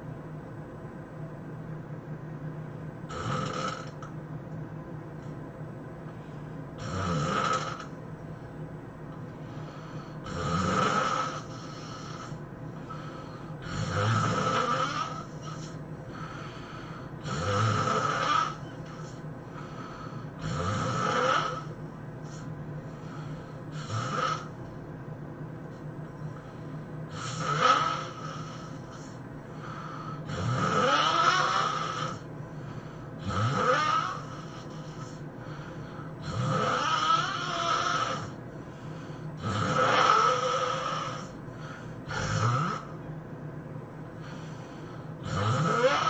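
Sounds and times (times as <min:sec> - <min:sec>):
steady low hum: 0:00.0 - 0:46.0
person snoring loudly: 0:03.1 - 0:04.1, 0:06.8 - 0:08.0, 0:09.5 - 0:22.4, 0:23.0 - 0:24.5, 0:27.1 - 0:32.3, 0:33.2 - 0:38.4, 0:39.4 - 0:43.0, 0:44.2 - 0:46.0.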